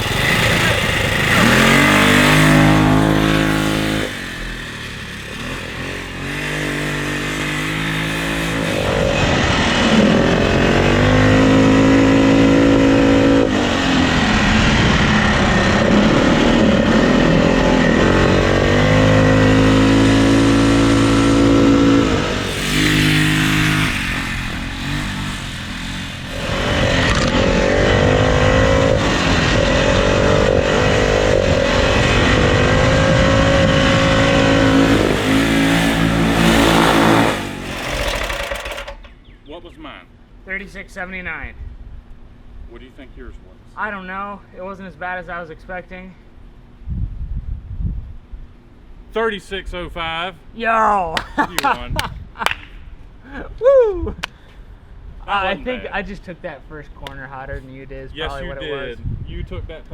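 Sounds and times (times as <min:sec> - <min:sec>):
engine revving under throttle: 0:00.0 - 0:39.1.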